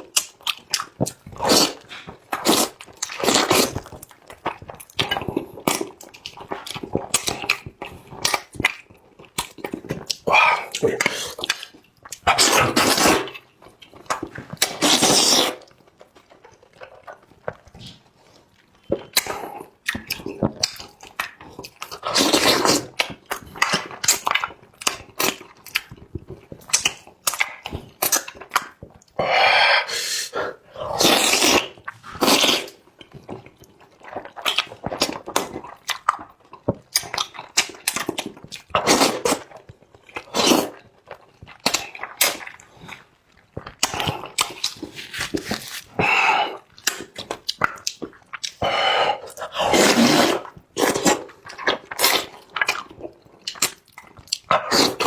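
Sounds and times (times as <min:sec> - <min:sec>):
person chewing: 0:00.0 - 0:55.0
slurping: 0:01.3 - 0:04.0, 0:09.7 - 0:13.4, 0:14.2 - 0:15.7, 0:22.0 - 0:23.0, 0:29.2 - 0:32.8, 0:40.2 - 0:40.9, 0:43.8 - 0:52.9, 0:54.4 - 0:55.0.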